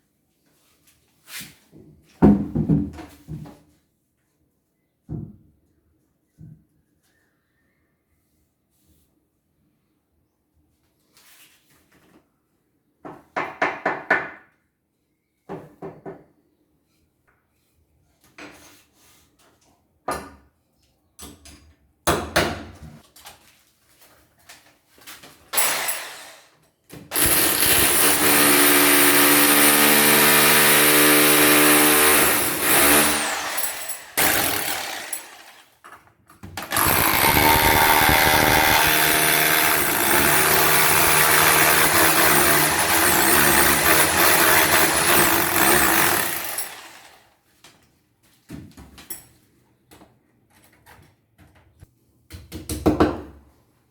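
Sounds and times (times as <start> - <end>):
electric power tool running: 27.1 - 35.7, 36.6 - 47.3.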